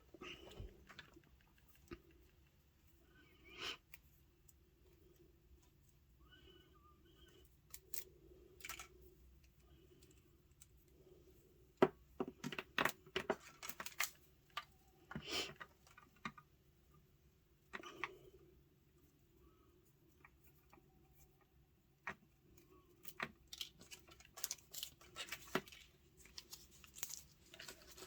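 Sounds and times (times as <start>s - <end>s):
packaging clicking and crinkling: 12.4s - 14.7s, 23.0s - 28.0s
packaging rustling: 23.4s - 28.0s.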